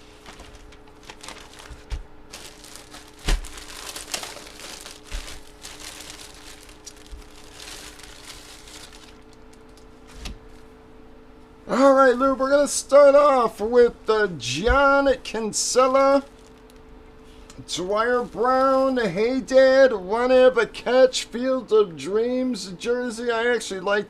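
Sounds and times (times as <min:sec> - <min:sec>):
plastic packaging crinkling: 0:00.0 - 0:10.7, 0:15.7 - 0:16.9.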